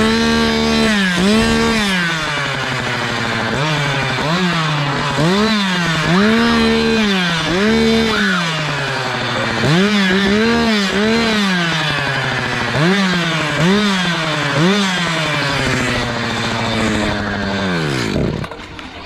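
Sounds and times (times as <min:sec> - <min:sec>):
chainsaw engine revving: 0:00.0 - 0:19.0.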